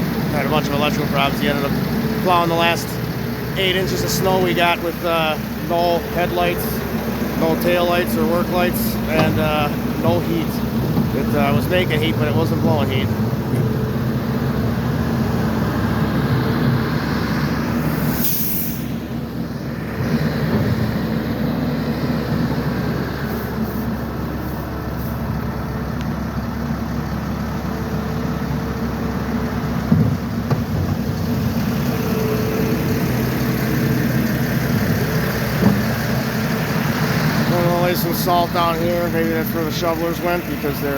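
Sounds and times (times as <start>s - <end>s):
diesel engine droning: 0.0s - 40.9s
air release hiss: 18.0s - 19.0s.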